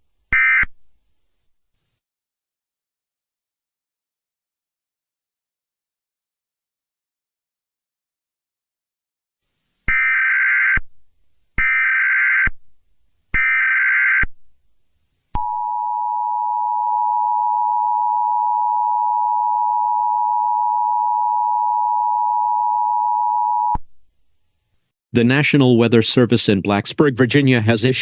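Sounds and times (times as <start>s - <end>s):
steady dual tone signal: 15.4s - 23.8s.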